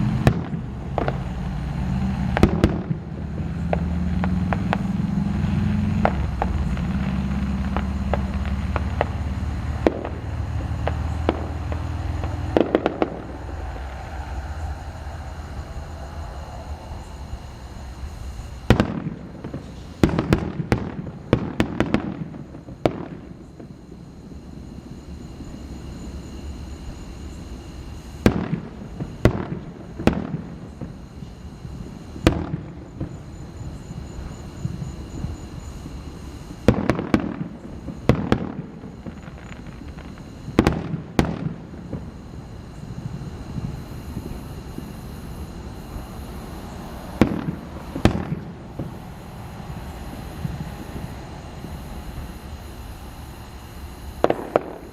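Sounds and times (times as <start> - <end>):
fireworks shells bursting: 0.0 - 16.0, 16.9 - 23.7, 26.9 - 53.3, 54.0 - 54.9
low rumble: 3.0 - 20.0.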